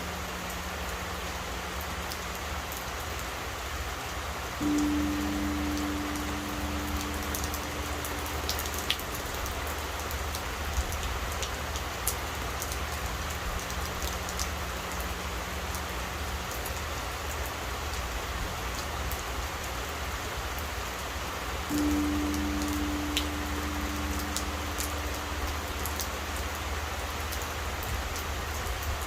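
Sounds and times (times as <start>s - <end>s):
steady rain falling: 0.0s - 29.0s
temple bell hum: 4.6s - 10.9s, 21.7s - 27.8s
sharp drip ticks: 4.6s - 18.1s, 21.7s - 29.0s.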